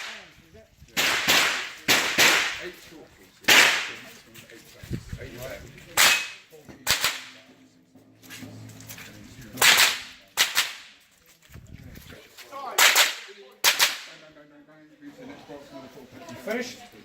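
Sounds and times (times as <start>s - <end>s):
rifle shots: 1.0s - 2.7s, 3.5s - 4.0s.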